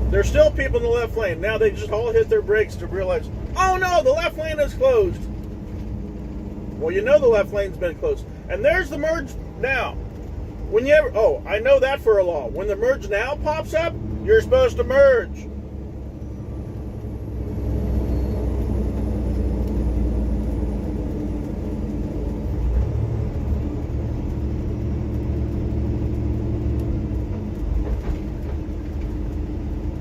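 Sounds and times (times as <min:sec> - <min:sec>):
truck diesel engine under load: 0:00.0 - 0:30.0.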